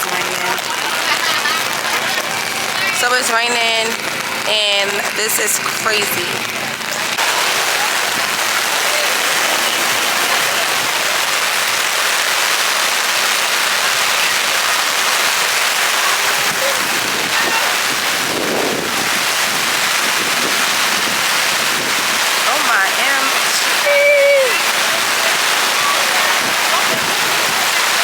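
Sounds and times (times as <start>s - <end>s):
heavy rain pouring: 0.0s - 28.0s.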